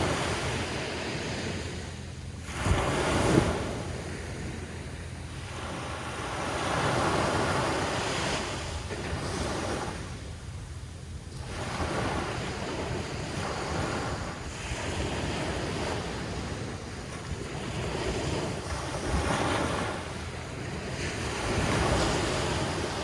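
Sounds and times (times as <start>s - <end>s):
surf breaking on beach: 0.0s - 4.9s, 11.4s - 23.0s
wind buffeting microphone: 0.0s - 23.0s.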